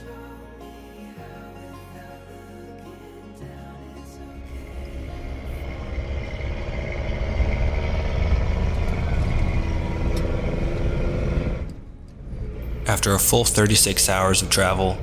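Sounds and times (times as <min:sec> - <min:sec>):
vehicle engine rumble: 0:04.1 - 0:15.0
road noise: 0:04.3 - 0:15.0.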